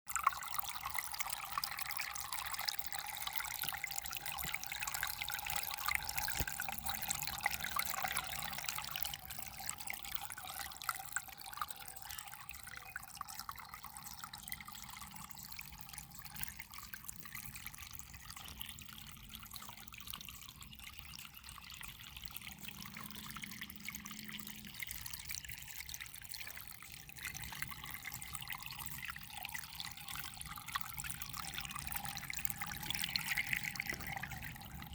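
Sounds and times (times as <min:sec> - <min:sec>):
water trickling: 0:00.1 - 0:34.9.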